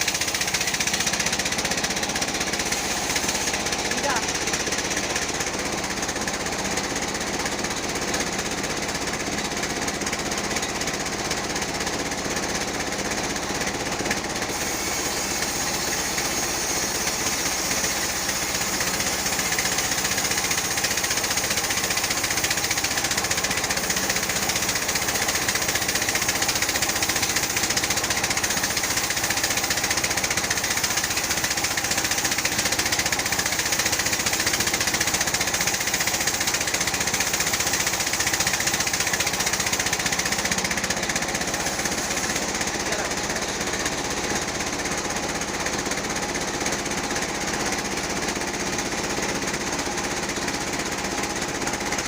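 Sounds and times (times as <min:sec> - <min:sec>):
saw blade hissing: 0:00.0 - 0:05.7, 0:14.3 - 0:45.2
band sawmill drone: 0:00.0 - 0:52.0.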